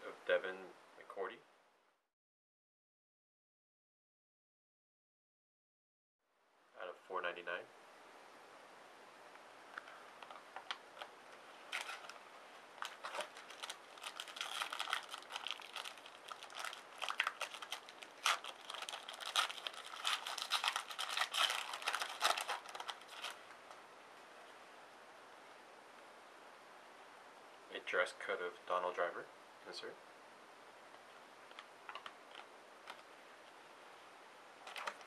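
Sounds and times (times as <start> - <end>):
foil wrapper crinkling and tearing: 11.7 - 12.2, 12.8 - 23.4, 31.5 - 33.0, 34.6 - 35.0
cards being handled: 12.8 - 15.8, 34.6 - 35.0.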